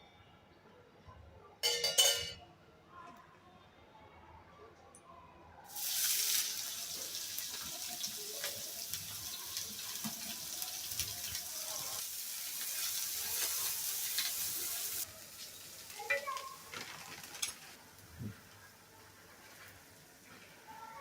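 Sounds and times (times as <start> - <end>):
food sizzling in hot oil: 5.7 - 20.6.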